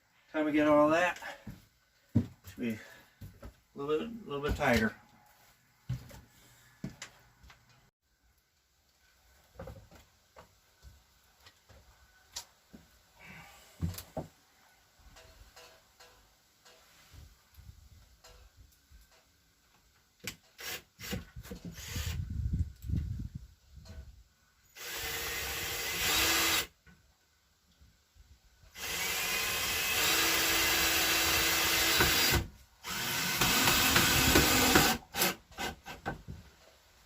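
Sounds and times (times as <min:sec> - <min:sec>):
power drill driving screws into wood: 0:20.3 - 0:22.2, 0:24.8 - 0:26.8, 0:28.7 - 0:36.0.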